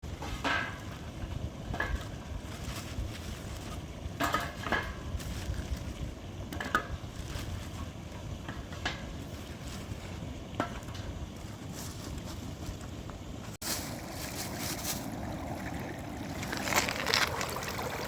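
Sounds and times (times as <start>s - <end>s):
steady low rumble: 5.0s - 18.0s.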